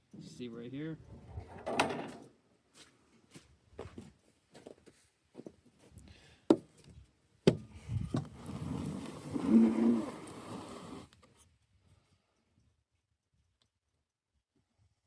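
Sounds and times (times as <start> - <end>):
wood and tools tapping and knocking: 1.5 - 2.3, 6.5 - 8.3.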